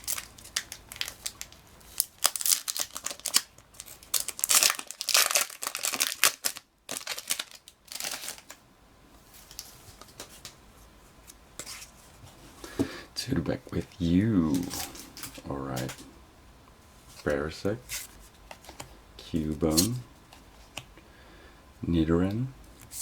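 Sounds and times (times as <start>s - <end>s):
wrapper crinkling and tearing: 0.0s - 8.6s
cards being handled: 14.5s - 16.1s, 17.2s - 20.0s.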